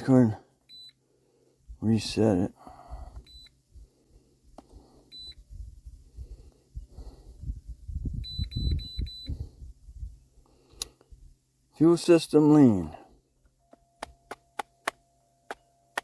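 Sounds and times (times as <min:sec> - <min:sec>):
short high beeps: 0:03.2 - 0:03.5, 0:05.1 - 0:05.4, 0:08.2 - 0:09.4.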